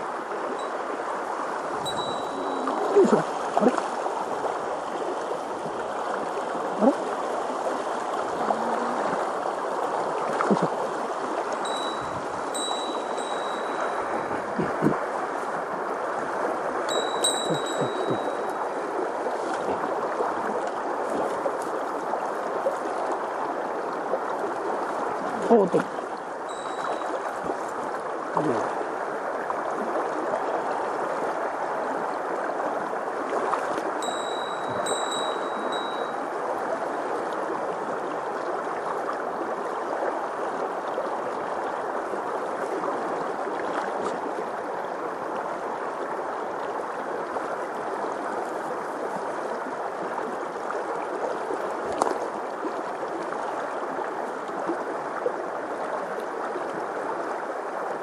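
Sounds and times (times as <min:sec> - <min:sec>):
stream rushing over rocks: 0:00.0 - 0:58.0
bell-like ring: 0:01.8 - 0:02.8, 0:11.6 - 0:14.4, 0:16.9 - 0:18.6, 0:26.5 - 0:27.2, 0:34.0 - 0:36.2.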